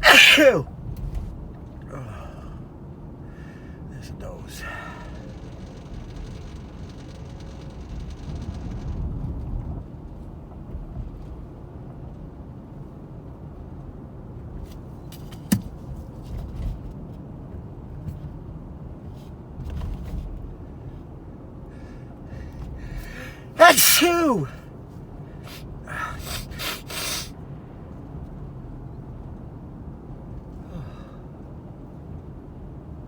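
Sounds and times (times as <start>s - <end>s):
hiss: 23.6s - 24.4s, 25.9s - 27.3s.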